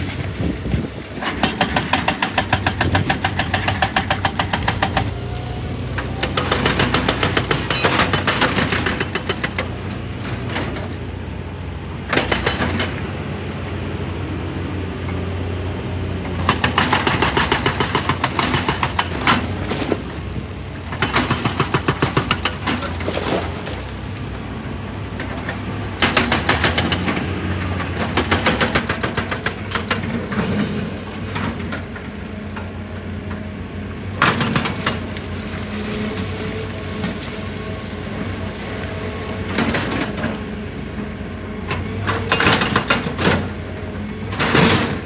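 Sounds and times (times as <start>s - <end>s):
diesel engine running: 0.0s - 45.0s
hydraulic breaker hammering rock: 0.4s - 11.1s, 12.0s - 13.3s, 16.2s - 23.7s, 25.2s - 32.0s, 34.2s - 36.2s, 41.6s - 45.0s.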